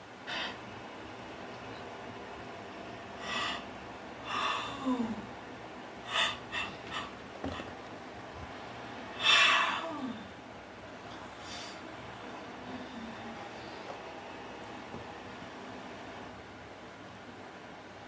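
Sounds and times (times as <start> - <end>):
person yawning: 4.3 - 5.3, 9.2 - 10.3.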